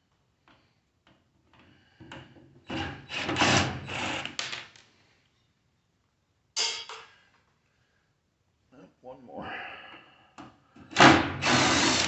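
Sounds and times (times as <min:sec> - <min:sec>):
cordless drill running: 0:11.0 - 0:12.0.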